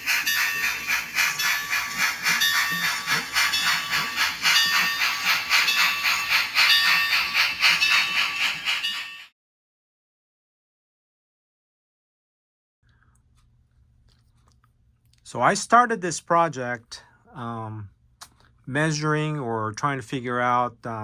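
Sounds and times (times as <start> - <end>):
steam locomotive chuffing: 0.0 - 9.3.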